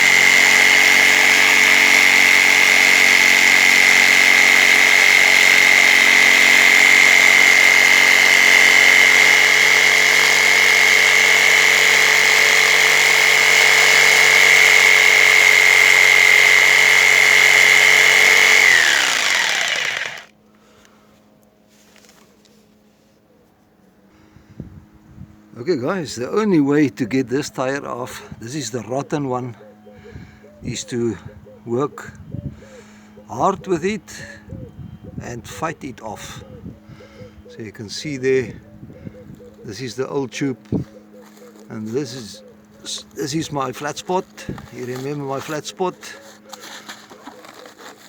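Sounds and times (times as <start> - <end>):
power tool running: 0.0 - 20.4, 40.6 - 48.0.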